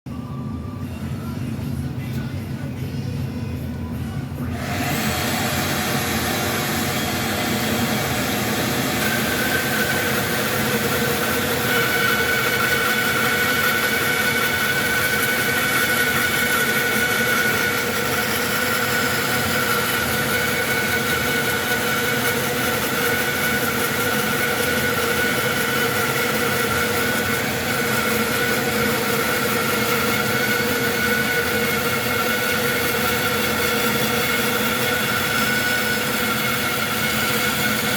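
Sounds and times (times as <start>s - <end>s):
steady whine: 0.1s - 37.9s
bandsaw cutting wood: 4.5s - 37.9s.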